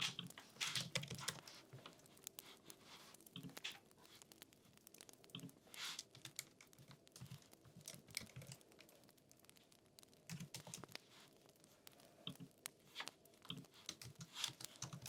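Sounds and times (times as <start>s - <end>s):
computer keyboard typing: 0.0s - 1.5s, 6.0s - 8.7s, 10.3s - 11.0s, 13.5s - 15.0s.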